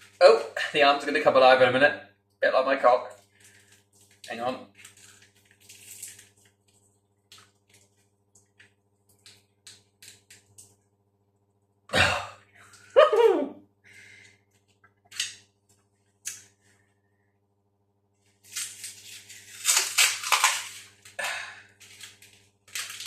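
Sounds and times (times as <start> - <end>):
wrapping crinkling and rustling: 3.1 - 10.8, 18.2 - 23.0.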